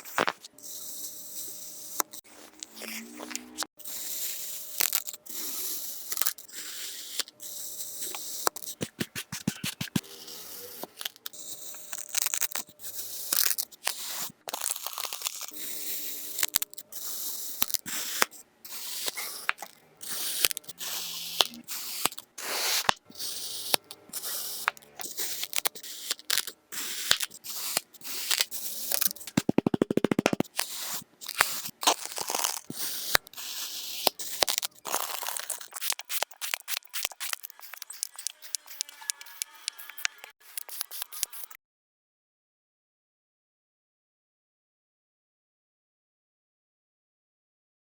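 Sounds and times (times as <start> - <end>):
crackling clicks: 24.6 - 33.3, 34.0 - 41.4.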